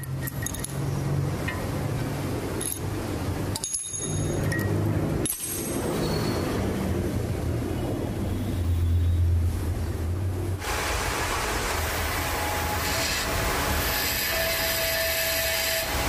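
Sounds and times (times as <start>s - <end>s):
light metallic clinks: 0.0s - 0.9s, 3.5s - 5.5s
workshop machine humming: 10.6s - 16.0s.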